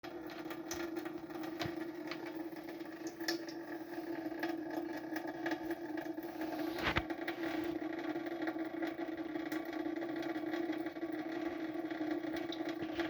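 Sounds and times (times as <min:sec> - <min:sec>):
tap water running: 0:00.0 - 0:13.0
light clicks or splashes: 0:03.0 - 0:03.6.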